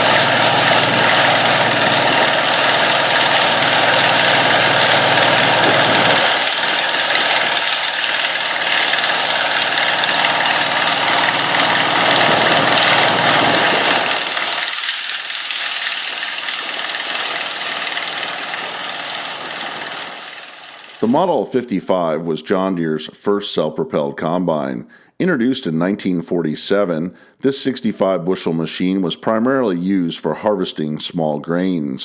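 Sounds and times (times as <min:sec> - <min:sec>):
combine harvester running: 0:00.0 - 0:21.0.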